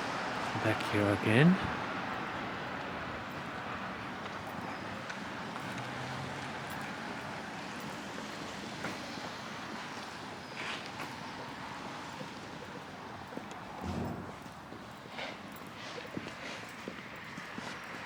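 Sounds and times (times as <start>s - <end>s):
footsteps on pavement: 13.2s - 18.0s.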